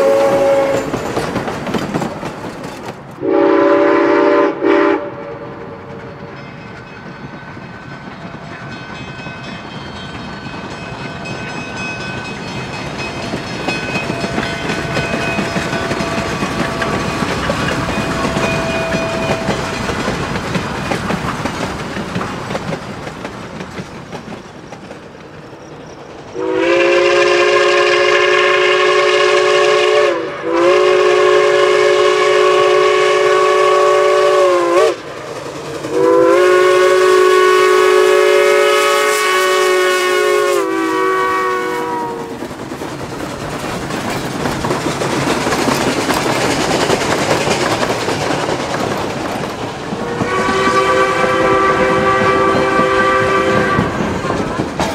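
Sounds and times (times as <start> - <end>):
steam whistle blasts: 0.0 - 1.0, 3.2 - 5.8, 26.4 - 35.1, 35.9 - 42.4, 50.0 - 54.1
train wheels clicking on rails: 0.0 - 4.4, 5.1 - 54.9.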